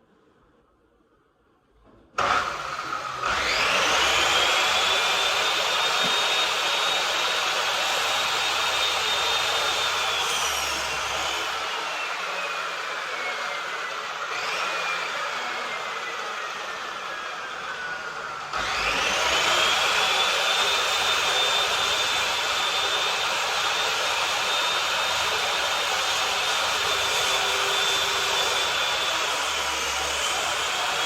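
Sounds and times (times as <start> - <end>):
power tool motor whining: 2.2 - 31.0.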